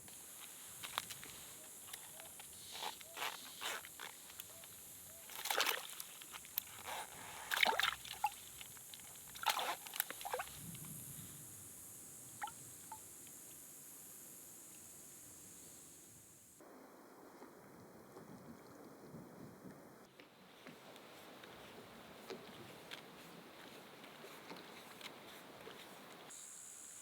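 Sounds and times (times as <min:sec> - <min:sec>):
faint high hiss: 0:00.0 - 0:17.6, 0:20.2 - 0:27.0
water sloshing and splashing: 0:05.2 - 0:06.6, 0:07.4 - 0:10.5.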